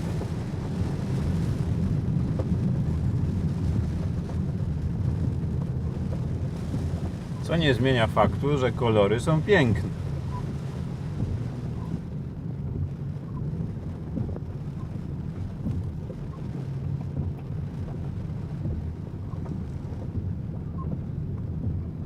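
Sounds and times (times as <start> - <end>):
wind buffeting microphone: 0.0 - 8.4, 9.5 - 22.0.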